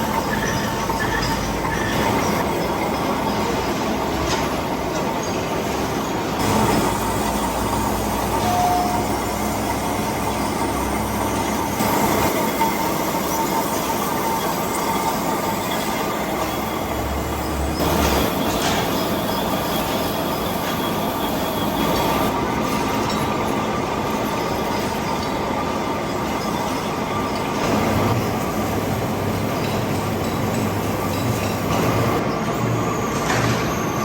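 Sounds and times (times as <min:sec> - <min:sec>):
machine tool cutting metal: 0:00.0 - 0:23.4.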